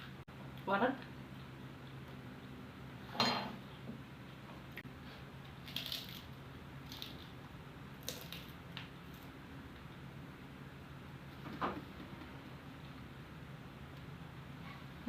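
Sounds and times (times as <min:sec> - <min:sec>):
low steady hum: 0:00.0 - 0:15.0
tableware clinking: 0:03.1 - 0:03.6.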